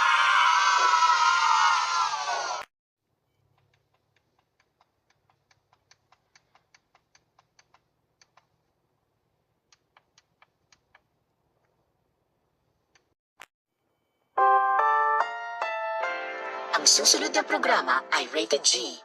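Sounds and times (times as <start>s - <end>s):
faint rapid clicking: 3.4s - 8.7s.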